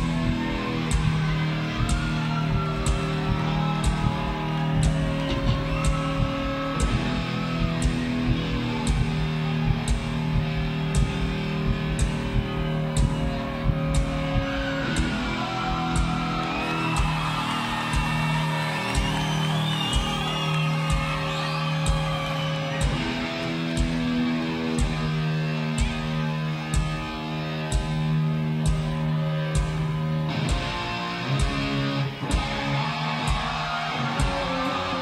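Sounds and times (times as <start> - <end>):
drum or cymbal strikes: 0.0 - 15.2
electric guitar lead: 0.0 - 35.0
rock band playing live: 0.0 - 35.0.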